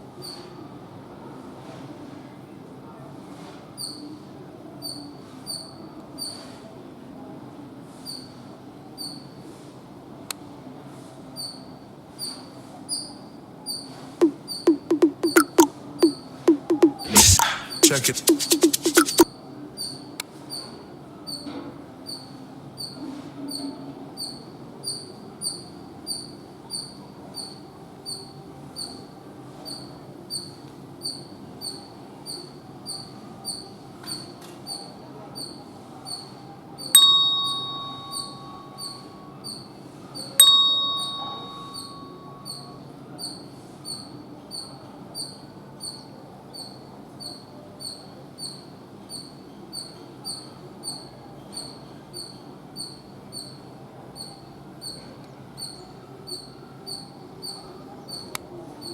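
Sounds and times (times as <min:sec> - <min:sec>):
bell-like ring: 0:37.0 - 0:38.9, 0:40.4 - 0:42.4.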